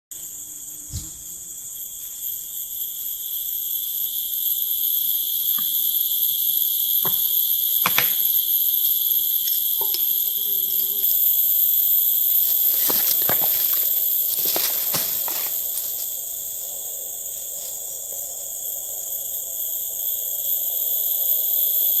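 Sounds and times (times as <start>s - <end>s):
insects trilling: 0.1s - 22.0s
knocks: 7.0s - 8.2s.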